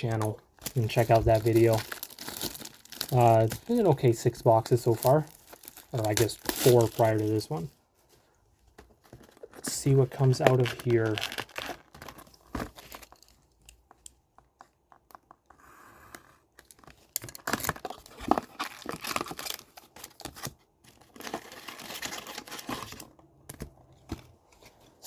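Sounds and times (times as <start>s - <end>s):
wrapper tearing and crinkling: 0.6s - 7.7s, 9.2s - 13.4s, 16.6s - 23.1s.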